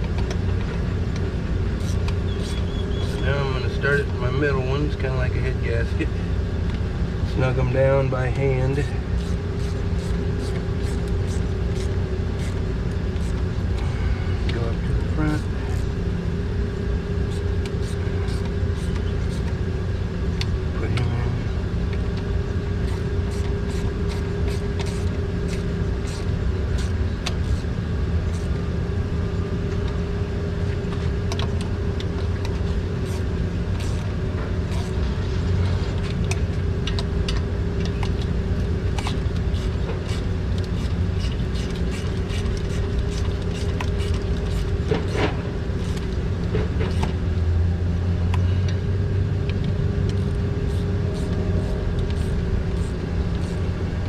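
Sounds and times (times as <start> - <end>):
low mechanical hum: 0.0 - 54.0
ratchet clicks and taps: 22.9 - 27.6, 38.9 - 46.1, 50.0 - 53.6.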